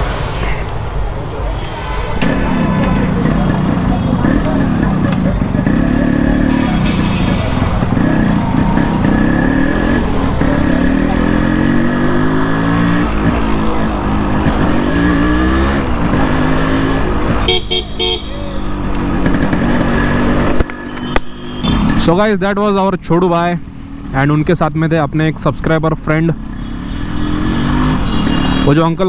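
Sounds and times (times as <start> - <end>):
motorcycle engine running: 2.2 - 22.0.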